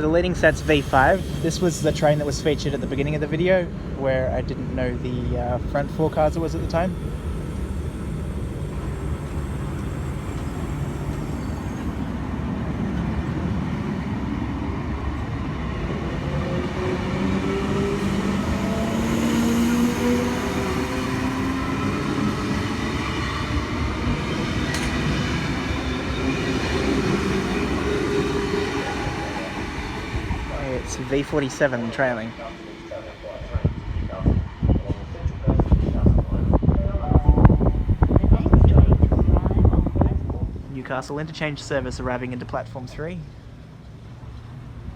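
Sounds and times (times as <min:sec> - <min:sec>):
train rumbling on rails: 0:00.0 - 0:44.9
motor whine gliding in pitch: 0:05.7 - 0:14.1.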